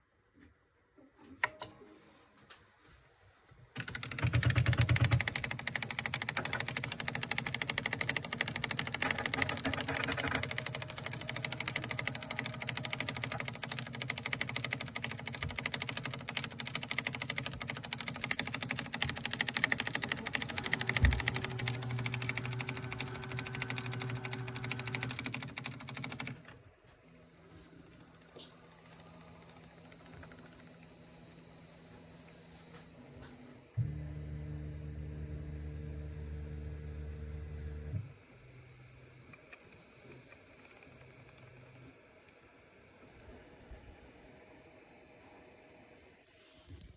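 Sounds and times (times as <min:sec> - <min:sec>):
printer extruder clicking rapidly: 0:03.8 - 0:26.6, 0:28.2 - 0:31.4.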